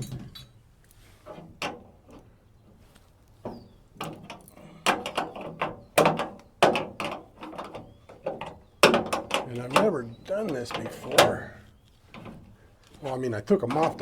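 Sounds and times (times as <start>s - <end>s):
hand tools clanking on steel: 4.1s - 12.4s, 13.0s - 14.0s.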